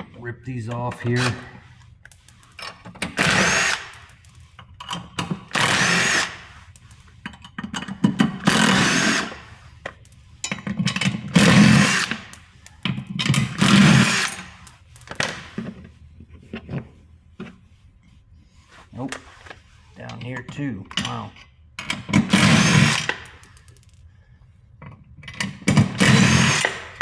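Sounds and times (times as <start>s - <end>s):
small handling clicks: 23.2s - 24.0s.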